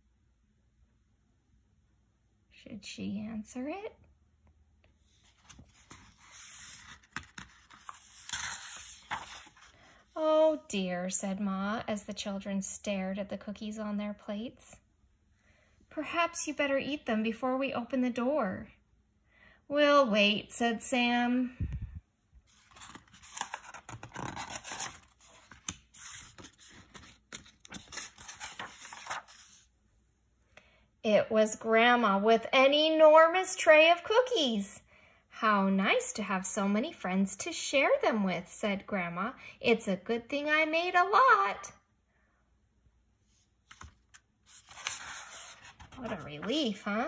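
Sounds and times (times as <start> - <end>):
paper rustling: 5.1 - 9.9, 22.5 - 29.7, 43.4 - 46.8.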